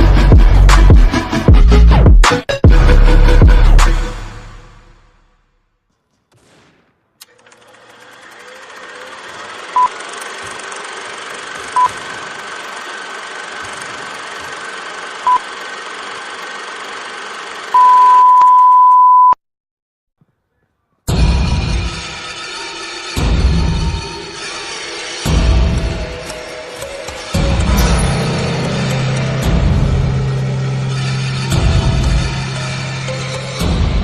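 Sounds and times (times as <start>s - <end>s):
electronic beeps: 17.8s - 19.4s.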